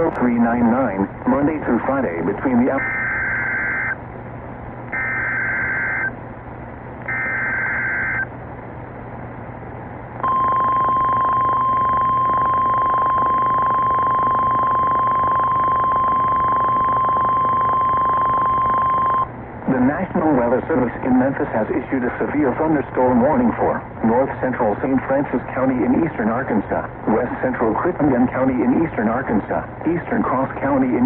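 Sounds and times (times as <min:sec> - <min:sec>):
steady high warning tone: 0:00.0 - 0:04.1, 0:04.9 - 0:06.2, 0:07.0 - 0:08.4, 0:10.2 - 0:21.4.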